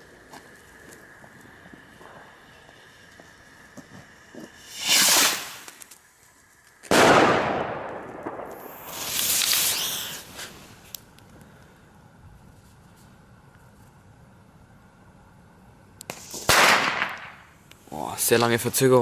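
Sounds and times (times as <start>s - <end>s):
hiss: 0.1s - 6.0s, 8.6s - 11.0s, 16.1s - 17.0s
firecracker bang: 4.5s - 5.8s, 6.8s - 10.5s, 16.1s - 17.5s.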